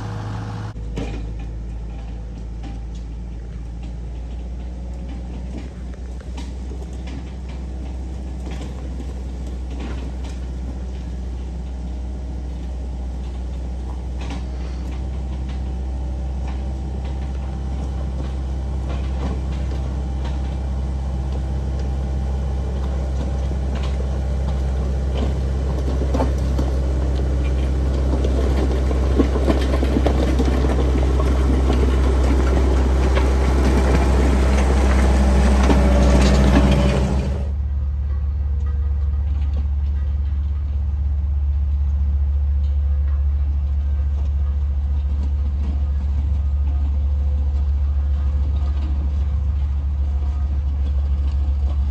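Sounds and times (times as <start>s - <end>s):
diesel engine running: 0.0s - 38.0s
rattles and knocks: 14.2s - 37.6s.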